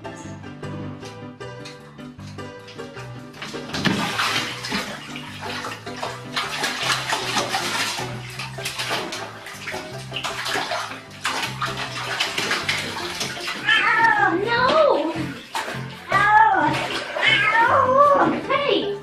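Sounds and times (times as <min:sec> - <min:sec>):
water running in bathtub: 0:01.0 - 0:19.0.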